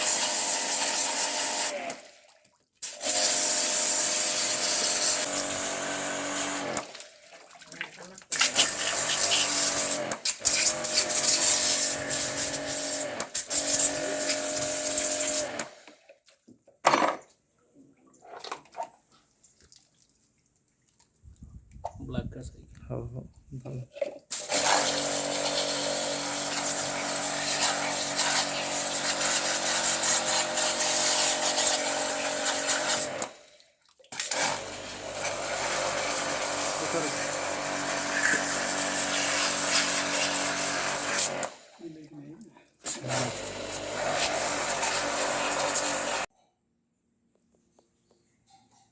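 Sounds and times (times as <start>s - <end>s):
electric motor running with hiss: 36.4s - 41.5s.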